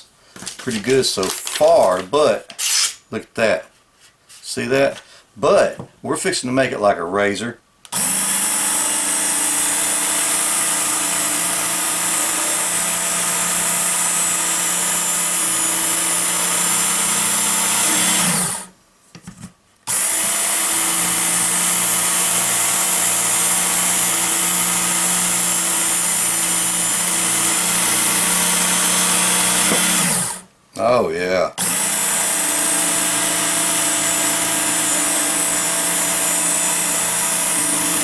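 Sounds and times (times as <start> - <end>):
knife blade sharpening on belt: 2.6 - 3.0
electric belt sharpener motor running: 7.9 - 18.7, 19.9 - 30.4, 31.6 - 38.0.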